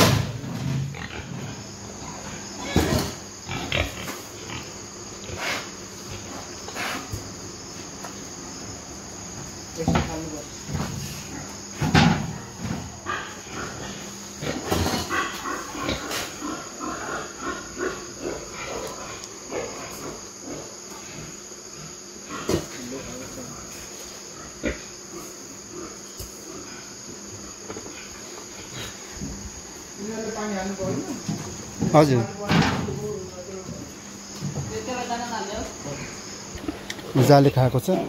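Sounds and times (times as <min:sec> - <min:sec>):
pigs calling: 0:00.0 - 0:07.3, 0:10.6 - 0:29.3.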